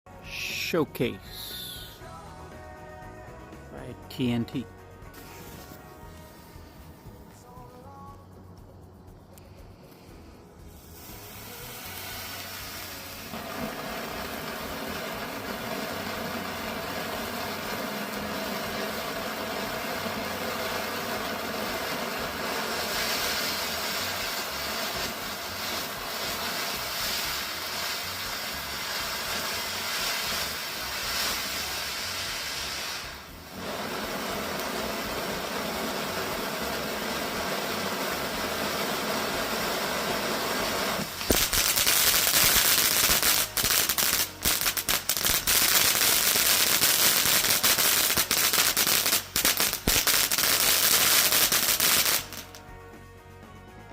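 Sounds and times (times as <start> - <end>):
firework fountain hissing: 0.1 - 52.7.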